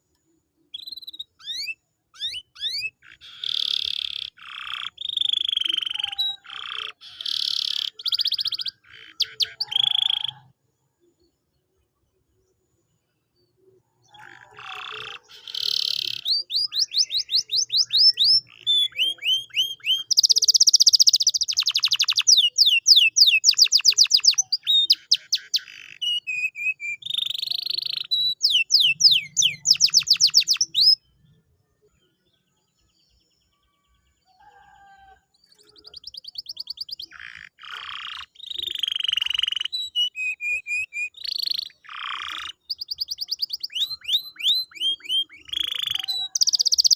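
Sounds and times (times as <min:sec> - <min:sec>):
canary singing: 0:00.0 - 0:10.6, 0:14.0 - 0:31.2, 0:34.8 - 0:46.9.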